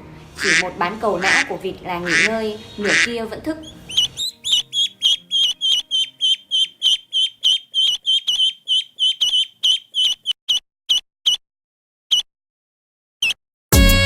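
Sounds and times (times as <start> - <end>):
duckling peeping: 0.4 - 11.4.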